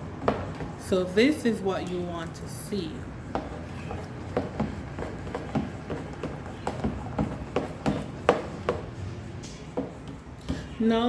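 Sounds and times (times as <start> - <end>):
spoon stirring batter in bowl: 2.5 - 10.7.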